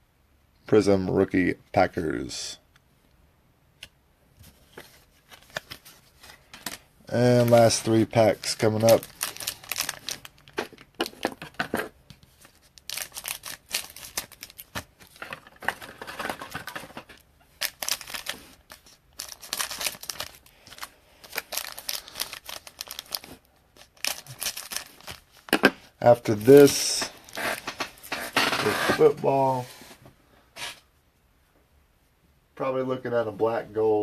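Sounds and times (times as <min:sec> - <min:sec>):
foil wrappers tearing and crinkling: 0:07.2 - 0:11.4, 0:12.4 - 0:28.7.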